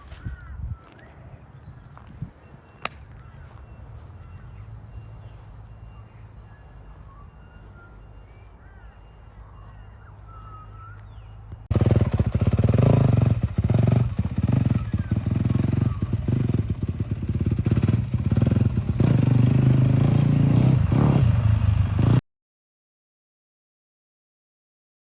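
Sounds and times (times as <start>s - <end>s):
motocross bike engine revving: 11.7s - 22.2s.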